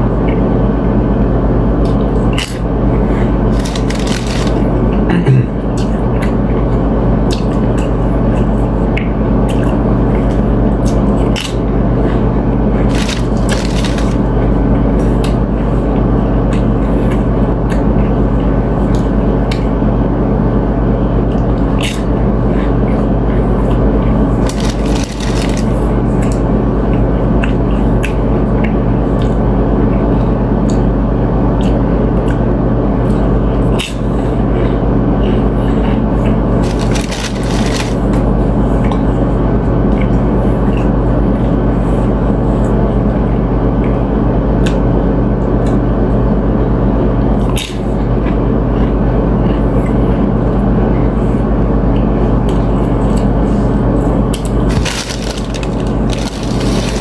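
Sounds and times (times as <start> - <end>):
steady low hum: 0.0 - 57.0
chewing food: 1.8 - 5.0, 12.8 - 14.4, 23.7 - 29.4, 35.2 - 39.0, 51.9 - 57.0.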